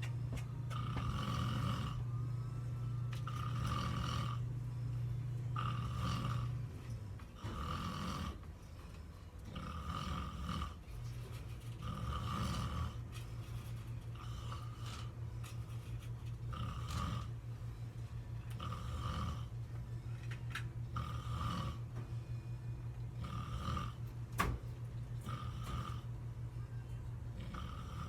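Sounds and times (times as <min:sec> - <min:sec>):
person snoring: 0:00.7 - 0:02.2, 0:03.2 - 0:04.5, 0:05.6 - 0:06.6, 0:07.4 - 0:08.4, 0:09.5 - 0:10.8, 0:11.8 - 0:13.0, 0:16.5 - 0:17.4, 0:18.6 - 0:19.5, 0:20.9 - 0:21.8, 0:23.2 - 0:24.0, 0:25.2 - 0:26.2, 0:27.4 - 0:28.0.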